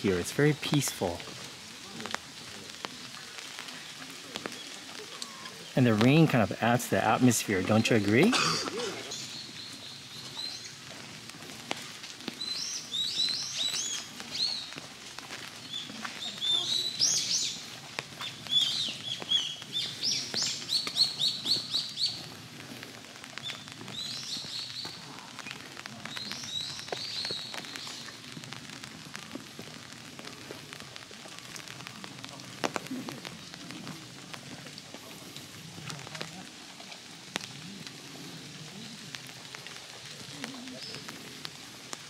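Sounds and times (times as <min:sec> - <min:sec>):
light drizzle hiss: 0:00.0 - 0:42.0
songbirds chirping: 0:09.0 - 0:29.1, 0:35.4 - 0:41.6.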